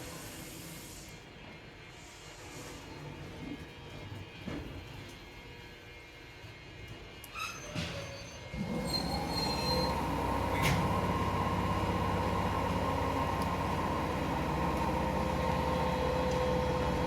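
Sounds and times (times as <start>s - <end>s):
electric train equipment humming: 8.6s - 17.0s.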